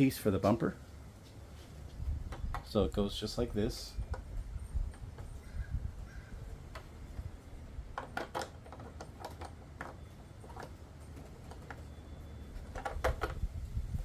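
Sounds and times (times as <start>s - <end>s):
hard plastic parts clicking: 3.7s - 5.3s, 6.5s - 11.9s, 12.5s - 13.5s.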